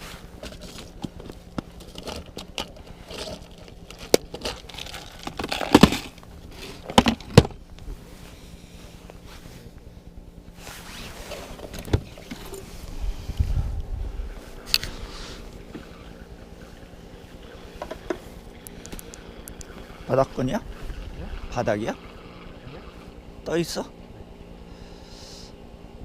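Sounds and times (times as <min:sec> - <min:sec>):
rustling and scraping: 0:00.0 - 0:09.8, 0:10.5 - 0:19.9.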